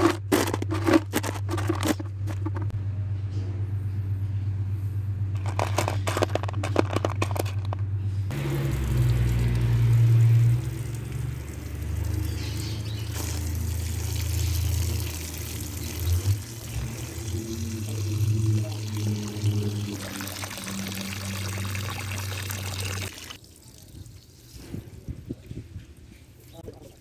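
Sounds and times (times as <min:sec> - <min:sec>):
steady low hum: 0:00.0 - 0:08.3
water pouring and running: 0:08.3 - 0:25.1.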